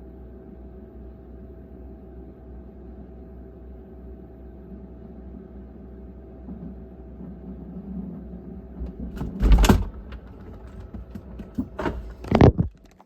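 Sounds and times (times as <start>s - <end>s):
refrigerator humming: 0.0s - 13.0s
refrigerator door knocking: 8.8s - 12.2s.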